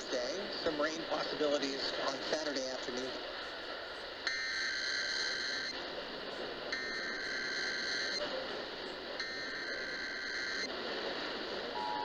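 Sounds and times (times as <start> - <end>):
radio hiss: 0.0 - 12.0
warbling digital data tones: 4.3 - 5.8, 6.7 - 8.2, 9.2 - 10.7.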